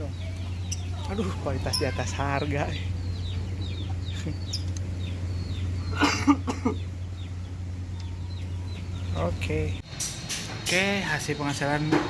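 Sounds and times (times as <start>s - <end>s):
chickens clucking: 0.0s - 9.5s
steady low hum: 0.0s - 12.0s.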